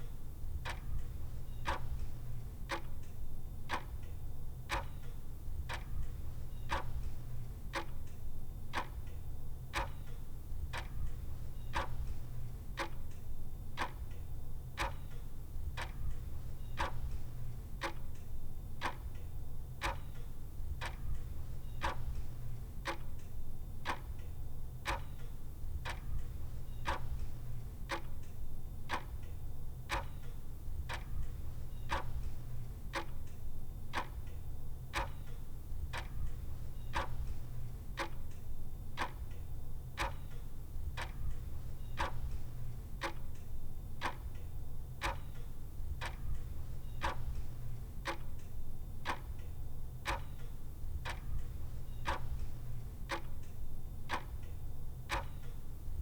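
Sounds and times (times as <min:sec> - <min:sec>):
clock ticking: 0:30.9 - 0:33.3, 0:33.9 - 0:34.3, 0:34.9 - 0:38.4, 0:39.0 - 0:39.4, 0:40.0 - 0:55.6.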